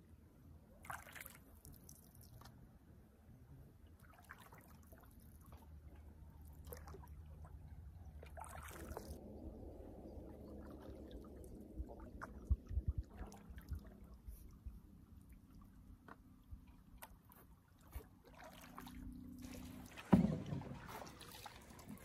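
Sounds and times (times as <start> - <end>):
water trickling and dripping: 8.2 - 22.0
low rumble: 9.1 - 15.6
low knocks: 20.0 - 20.9.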